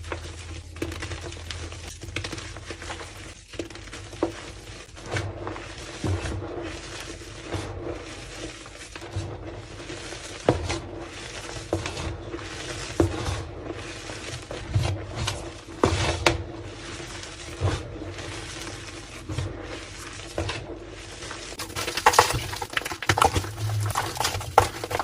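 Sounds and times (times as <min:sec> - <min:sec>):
chalk crunching: 0:16.7 - 0:25.0.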